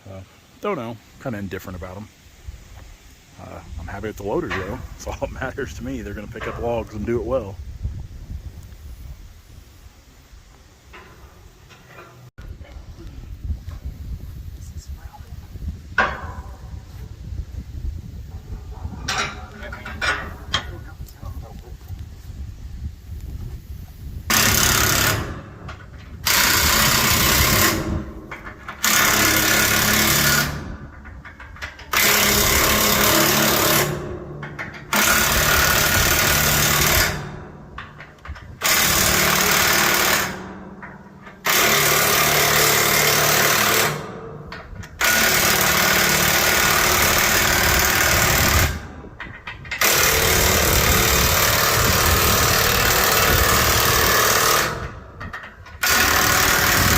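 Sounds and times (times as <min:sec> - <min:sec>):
impact wrench hammering on bolts: 0:16.0 - 0:16.7, 0:24.3 - 0:56.9.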